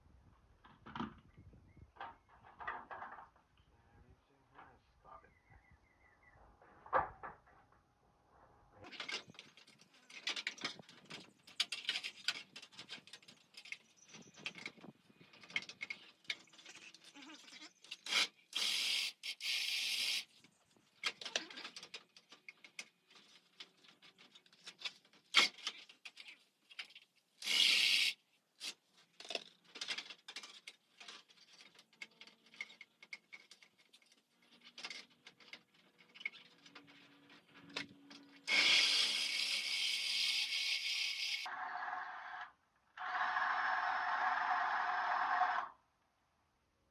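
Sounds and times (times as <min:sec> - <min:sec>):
tools and parts clicking and rattling: 0:08.8 - 0:41.5
short scraping or hissing: 0:27.4 - 0:28.2, 0:38.5 - 0:41.5.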